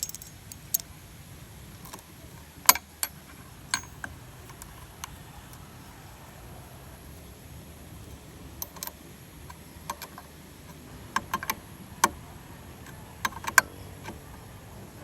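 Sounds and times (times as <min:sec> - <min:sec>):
metallic clicks of tools: 0:00.0 - 0:00.9, 0:08.0 - 0:12.2.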